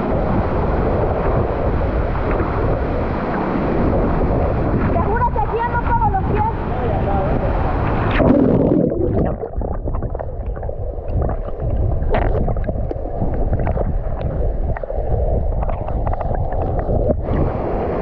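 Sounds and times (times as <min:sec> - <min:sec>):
muffled water gurgling and sloshing: 0:00.0 - 0:18.0
low underwater rumble: 0:03.6 - 0:18.0.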